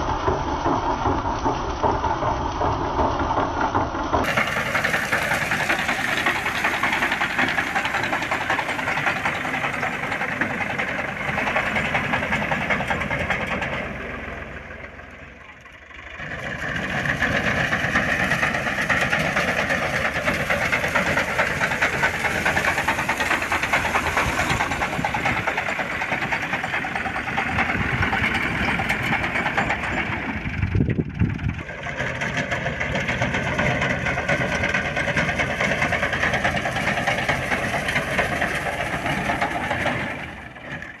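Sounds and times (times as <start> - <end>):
tractor diesel engine running: 0.0 - 41.0.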